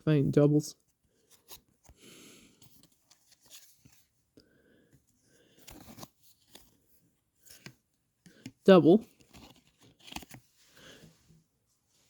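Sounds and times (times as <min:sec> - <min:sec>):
soft breath: 0:01.1 - 0:02.9, 0:04.4 - 0:06.1, 0:10.5 - 0:12.0.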